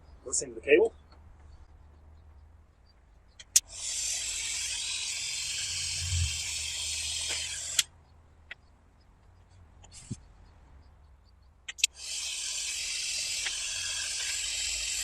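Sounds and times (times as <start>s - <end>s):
gas torch hissing: 3.6s - 7.8s, 11.8s - 15.0s
torch ignition click: 11.7s - 15.0s.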